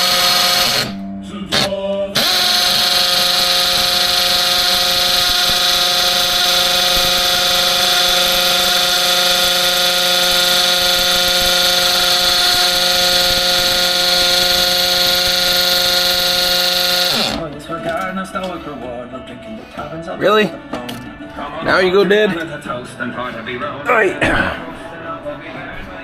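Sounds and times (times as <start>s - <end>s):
power drill motor whine: 0.0s - 17.5s.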